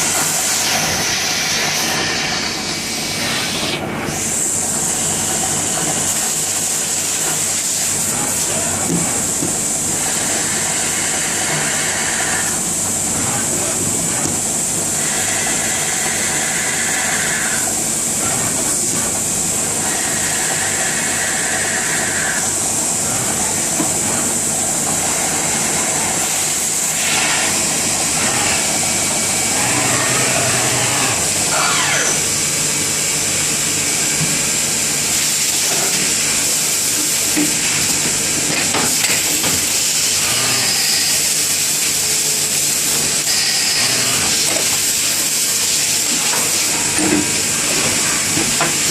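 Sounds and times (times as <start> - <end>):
machine running: 8.0 - 42.0
whining tone: 29.5 - 32.3.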